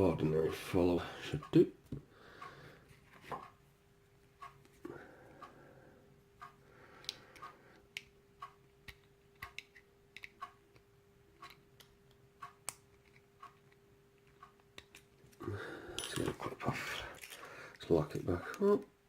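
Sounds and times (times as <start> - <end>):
faint steady hum: 0.0 - 19.0
small metal clicks and taps: 8.8 - 15.1.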